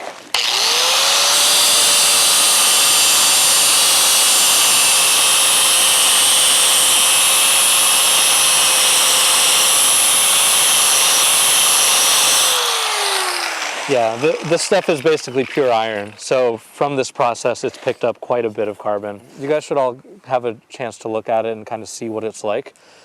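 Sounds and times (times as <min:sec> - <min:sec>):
electric grinder whine: 0:00.0 - 0:16.2.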